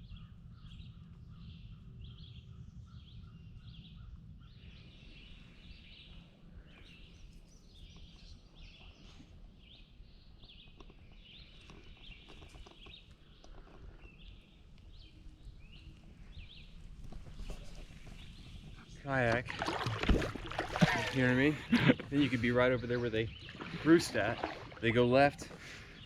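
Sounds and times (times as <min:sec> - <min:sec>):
songbirds chirping and trilling: 0:00.0 - 0:26.0.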